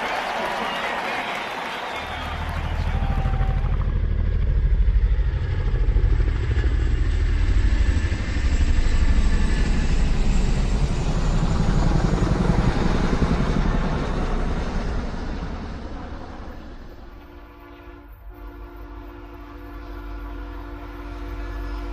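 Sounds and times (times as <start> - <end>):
low vehicle rumble passing: 2.1 - 17.3.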